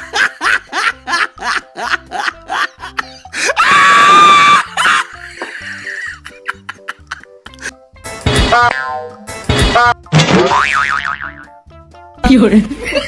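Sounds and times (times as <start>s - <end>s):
music with choppy beat: 7.5s - 10.4s.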